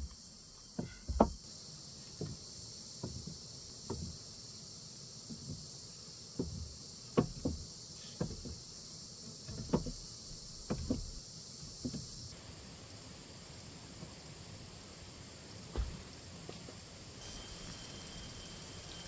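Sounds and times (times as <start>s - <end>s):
crickets chirping: 0.0s - 19.0s
knocks and thuds: 0.7s - 1.4s, 6.4s - 8.7s, 9.4s - 12.2s, 15.7s - 16.0s.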